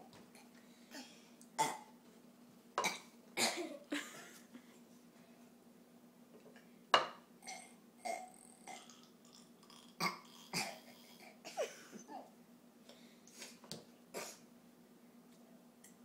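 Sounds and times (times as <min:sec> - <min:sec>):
young child burping: 0:02.8 - 0:04.0, 0:07.4 - 0:12.3.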